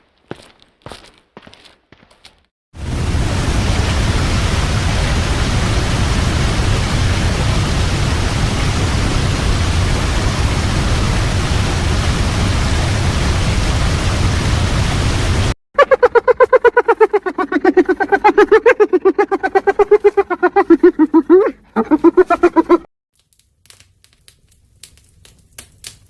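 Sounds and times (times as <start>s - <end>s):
waterfall rushing: 2.8s - 15.6s.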